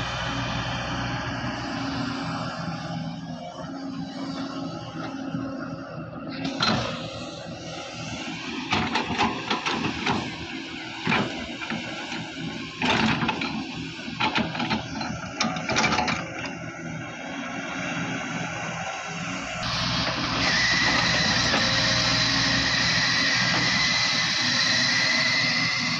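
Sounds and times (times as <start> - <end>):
excavator diesel engine running: 0.0 - 25.9.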